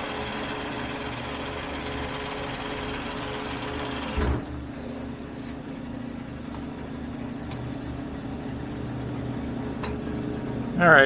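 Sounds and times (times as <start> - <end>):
metal lathe humming: 0.0 - 4.2.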